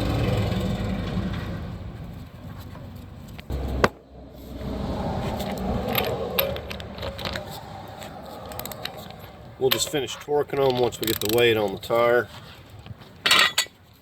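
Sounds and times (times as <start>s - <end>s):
metallic clicks of lug nuts and tools: 5.3s - 12.0s, 12.8s - 13.9s.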